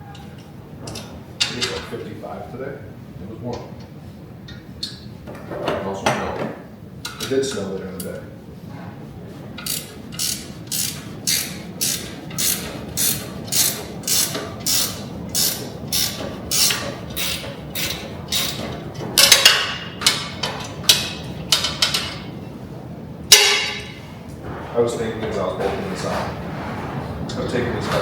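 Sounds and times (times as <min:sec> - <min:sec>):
ratchet wrench tightening bolt: 0:09.6 - 0:18.7.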